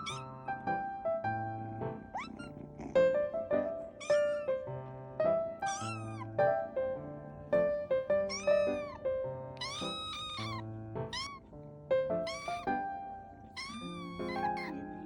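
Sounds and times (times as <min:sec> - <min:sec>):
kitten meowing: 0:00.0 - 0:00.9, 0:01.6 - 0:04.7, 0:05.4 - 0:06.8, 0:07.6 - 0:15.0.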